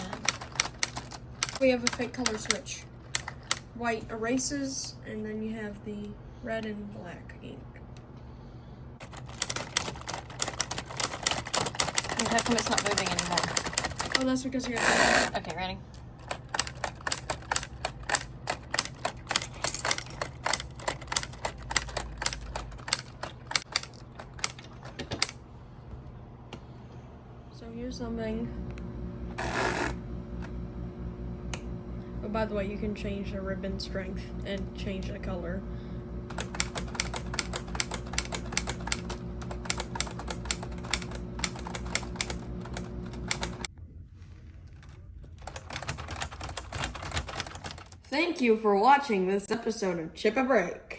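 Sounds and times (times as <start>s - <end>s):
plastic typewriter keys clacking: 0.0s - 3.6s, 9.0s - 15.6s, 16.2s - 25.4s, 36.3s - 43.7s, 44.8s - 48.0s.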